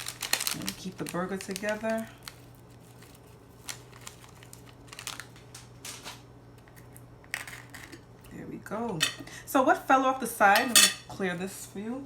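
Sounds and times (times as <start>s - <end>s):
hands rustling food: 0.0s - 7.7s
faint steady hum: 0.0s - 12.0s.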